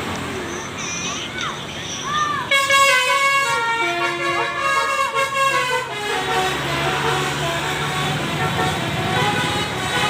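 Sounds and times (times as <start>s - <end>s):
voices: 0.2s - 2.6s
musical air horns playing: 2.5s - 10.0s.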